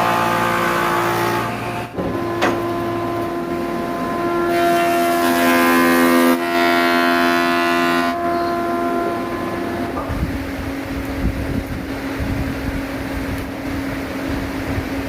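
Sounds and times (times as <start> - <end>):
power tool motor whine: 0.0 - 10.0.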